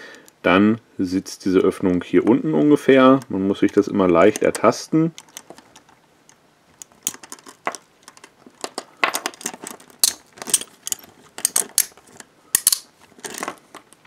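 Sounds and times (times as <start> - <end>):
key clicking and rattling in handcuffs: 5.1 - 13.7.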